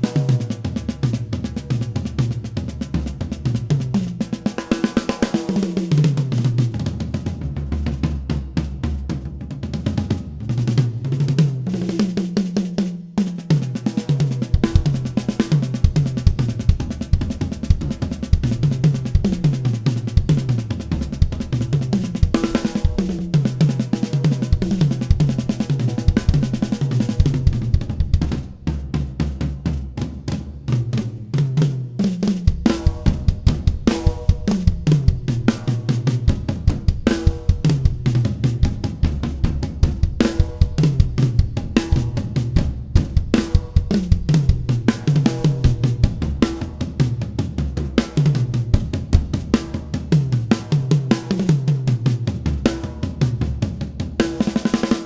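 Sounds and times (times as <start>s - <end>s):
drum kit groove: 0.0s - 55.0s
tom fills: 14.6s - 47.2s.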